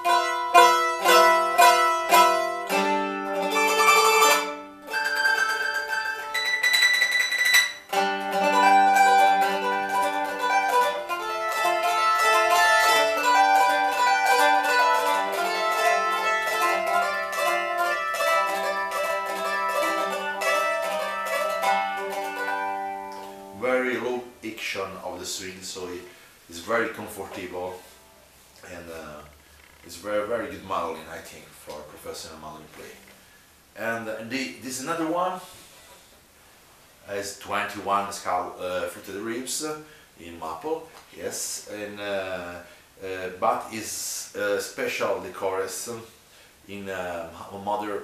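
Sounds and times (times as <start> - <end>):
plucked mandolin melody: 0.0 - 24.4.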